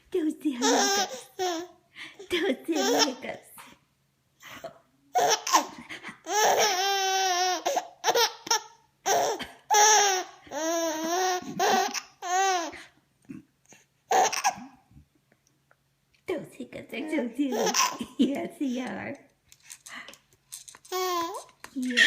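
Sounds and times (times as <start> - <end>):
baby giggling and squealing: 5.2 - 12.8, 14.1 - 14.8, 17.5 - 18.1, 20.9 - 22.0.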